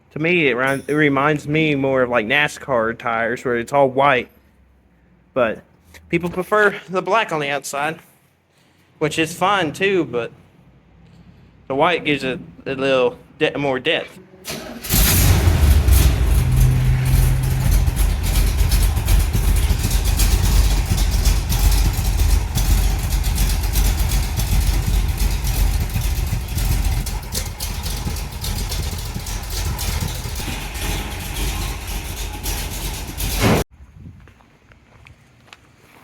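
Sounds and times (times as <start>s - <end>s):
truck engine rough rumble: 14.8s - 33.7s.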